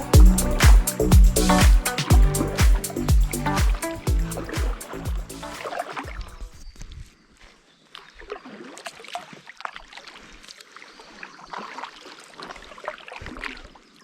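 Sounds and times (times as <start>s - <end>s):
water dripping: 0.0s - 6.6s
paddle splashing in water: 1.6s - 6.6s, 7.9s - 14.0s.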